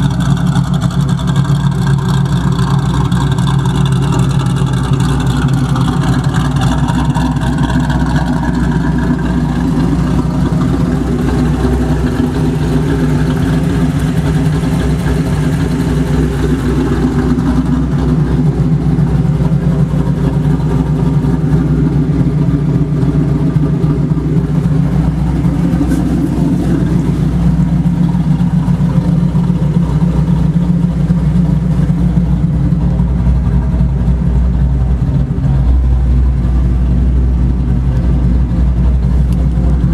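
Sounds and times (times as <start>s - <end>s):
car engine idling: 0.0s - 39.9s
engine tapping: 0.0s - 39.9s.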